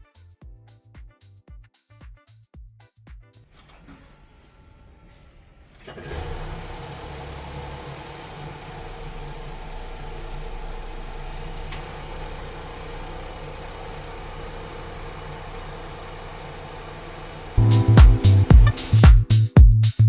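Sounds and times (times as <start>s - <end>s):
car engine idling: 3.5s - 19.5s.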